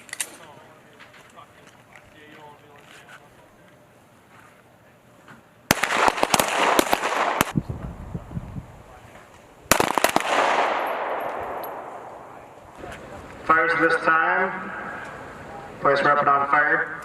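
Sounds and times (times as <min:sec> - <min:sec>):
echoing gunshots: 0:05.7 - 0:07.6, 0:09.7 - 0:12.8.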